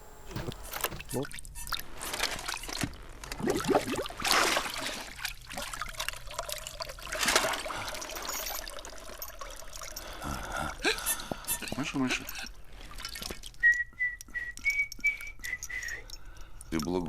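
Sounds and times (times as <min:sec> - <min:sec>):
water trickling and splashing: 0:01.0 - 0:10.6, 0:11.6 - 0:13.8.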